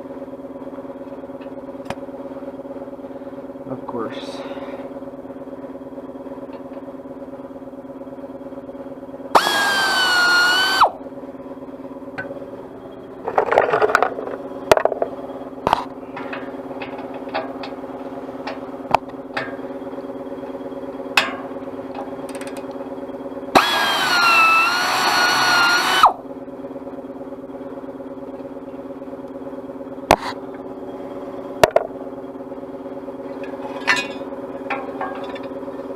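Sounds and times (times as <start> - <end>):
steady low hum: 0.0 - 35.9
power drill whining: 9.3 - 11.0, 23.6 - 26.2.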